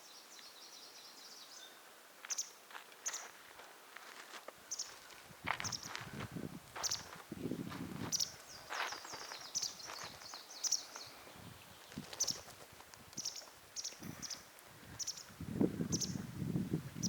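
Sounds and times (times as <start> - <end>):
small bird chirping: 0.0 - 3.4, 4.7 - 5.9, 6.8 - 7.1, 8.1 - 12.5, 13.2 - 15.3, 15.9 - 16.2.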